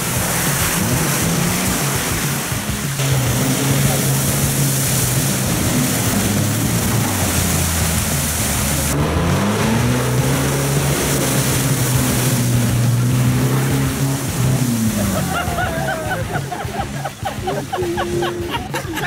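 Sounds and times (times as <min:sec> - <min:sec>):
steady hiss: 0:00.0 - 0:09.0
jeep engine revving: 0:00.0 - 0:19.0.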